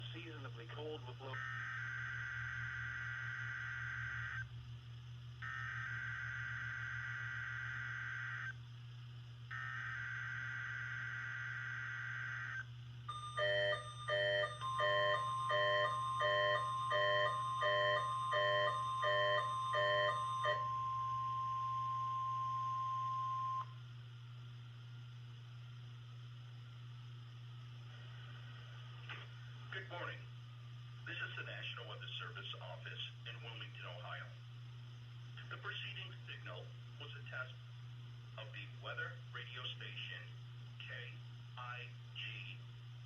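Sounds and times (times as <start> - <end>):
low hum: 0.0 - 43.0
steady warning alarm tone: 0.2 - 4.6, 5.4 - 8.6, 9.5 - 23.8.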